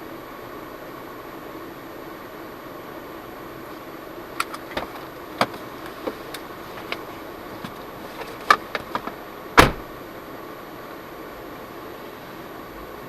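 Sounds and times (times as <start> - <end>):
vehicle interior hum: 0.0 - 13.0
loud thump: 9.6 - 9.9.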